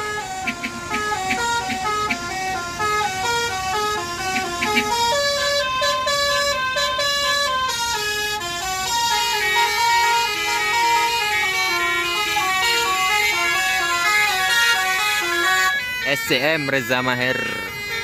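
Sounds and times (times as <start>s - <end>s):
multi-trumpet bus horn melody: 0.0s - 18.0s.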